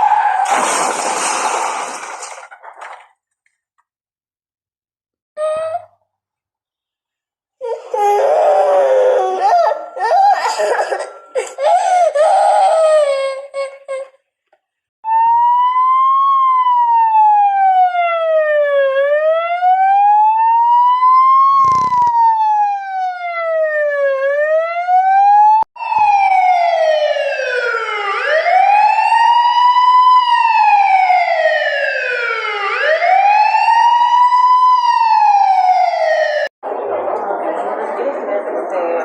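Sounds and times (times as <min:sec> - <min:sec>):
emergency siren wailing: 0:15.0 - 0:36.5
louder siren wail: 0:15.0 - 0:36.5.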